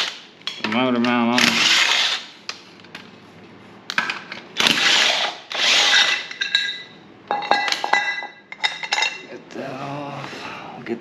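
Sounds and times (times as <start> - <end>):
power tool bursts: 4.6 - 6.3.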